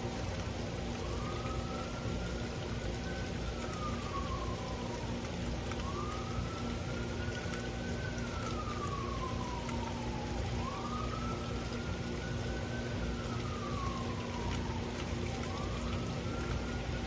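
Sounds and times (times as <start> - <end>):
siren wailing: 0.0 - 17.0
steady rain: 0.0 - 17.0.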